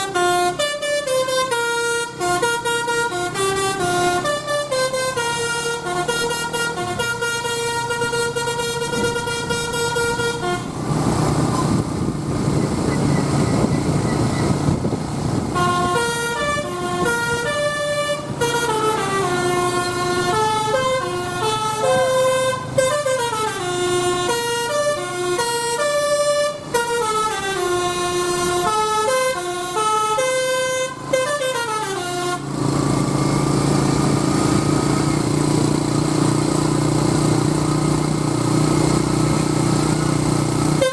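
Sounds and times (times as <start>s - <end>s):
musical bus air horn melody: 0.0s - 10.9s, 15.5s - 32.5s
bus engine running: 0.0s - 40.9s.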